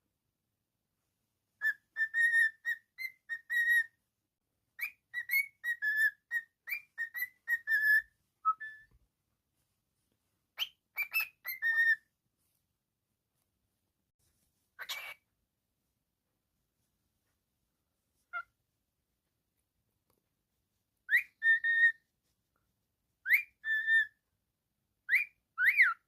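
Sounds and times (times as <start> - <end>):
cockatiel whistling a tune: 1.6 - 4.0, 4.8 - 9.0, 10.6 - 12.1, 14.8 - 15.2, 21.0 - 22.0, 23.2 - 24.2, 25.0 - 26.0.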